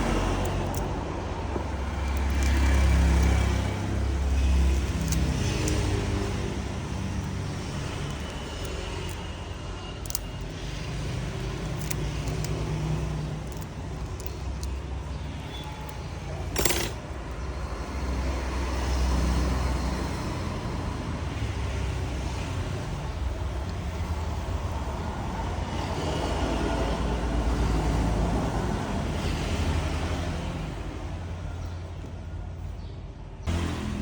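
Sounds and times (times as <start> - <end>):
road traffic rumble: 0.0 - 34.0
small clicks: 0.2 - 1.0, 1.8 - 9.3, 9.9 - 17.1.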